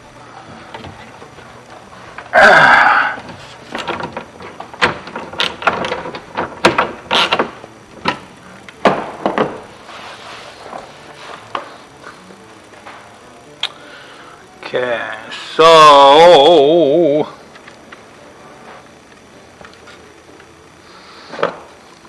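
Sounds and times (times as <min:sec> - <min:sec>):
lock mechanism clicks and knocks: 0:03.2 - 0:09.6.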